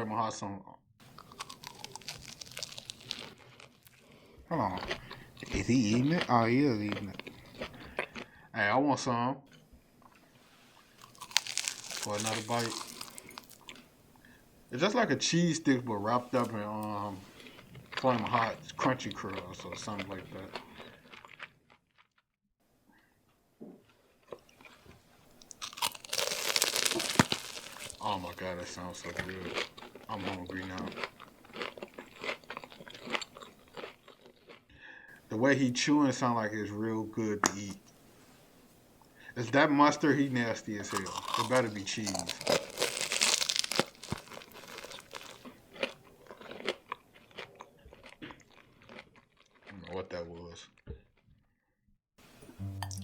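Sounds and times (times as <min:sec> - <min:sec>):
faint chewing: 0:01.0 - 0:08.4, 0:09.5 - 0:14.4, 0:15.7 - 0:22.2, 0:23.8 - 0:35.2, 0:40.4 - 0:51.3.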